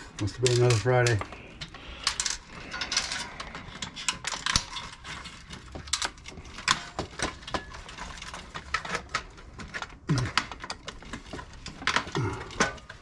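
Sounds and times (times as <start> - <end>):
metal and plastic parts clinking: 0.0 - 13.0.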